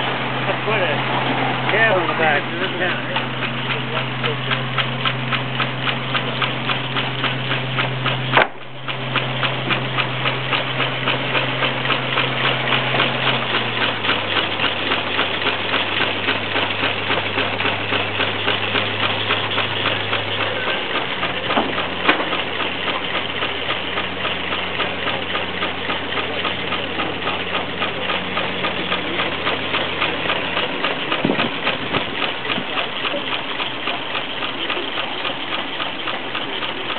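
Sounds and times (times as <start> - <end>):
steady low hum: 0.0 - 36.9
steam engine exhaust beating: 0.0 - 36.9.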